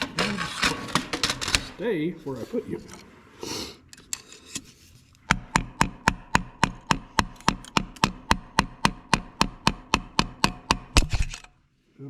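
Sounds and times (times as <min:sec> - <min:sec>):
hammer striking screwdriver: 0:05.2 - 0:11.6.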